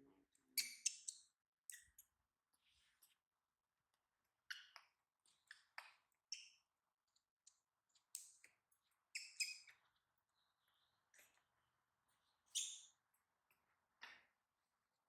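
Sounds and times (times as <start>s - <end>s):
baby monkey squeaking: 0.6s - 2.0s, 9.1s - 9.7s.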